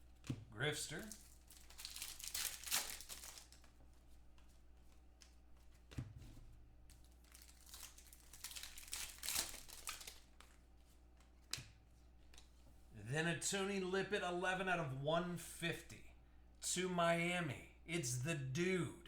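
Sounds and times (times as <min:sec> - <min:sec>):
foil wrapper crinkling and tearing: 0:00.9 - 0:03.8, 0:06.9 - 0:10.7.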